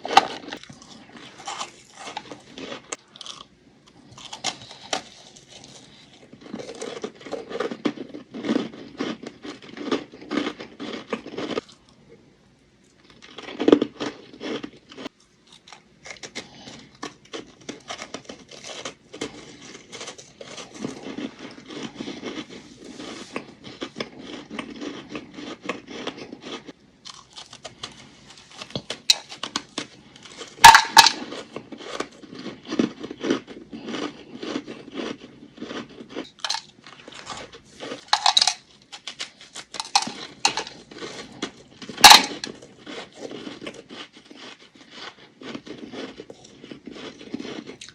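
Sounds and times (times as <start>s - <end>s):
ice crunching in bites: 28.6s - 47.9s.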